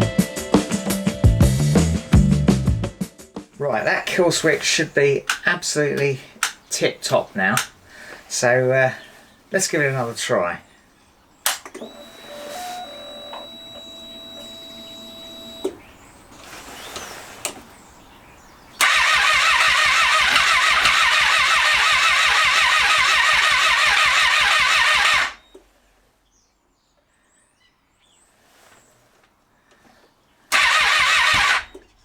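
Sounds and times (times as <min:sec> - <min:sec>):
starter motor cranking engine: 0:03.8 - 0:07.8, 0:11.5 - 0:17.7, 0:18.7 - 0:25.4, 0:30.5 - 0:31.9
clicks: 0:04.1 - 0:07.8, 0:11.4 - 0:15.8
faint steady whine: 0:11.4 - 0:16.5.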